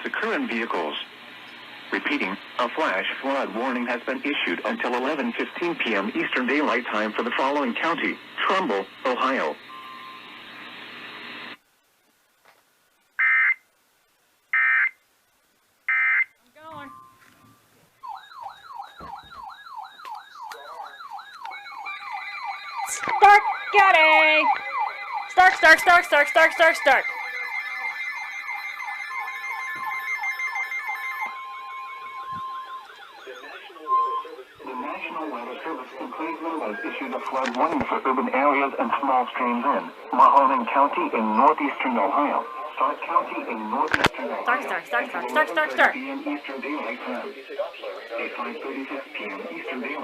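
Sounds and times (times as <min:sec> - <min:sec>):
radio hiss: 0:00.0 - 0:18.0, 0:22.8 - 0:50.0
digital data tone bursts: 0:20.6 - 0:37.3.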